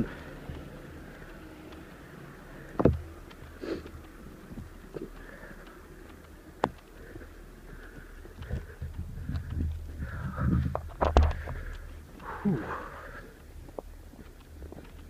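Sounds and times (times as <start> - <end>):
blizzard wind on microphone: 8.4 - 11.0.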